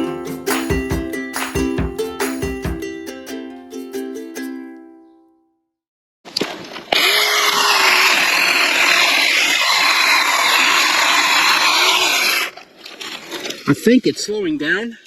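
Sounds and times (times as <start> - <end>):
electric chainsaw cutting wood: 6.9 - 12.6.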